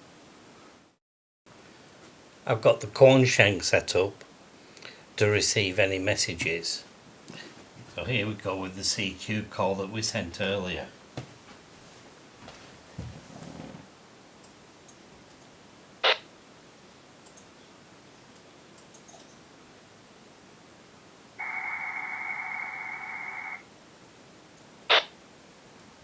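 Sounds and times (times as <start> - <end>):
buzzy data tone over radio: 16.0 - 16.4, 21.2 - 23.8, 24.8 - 25.2.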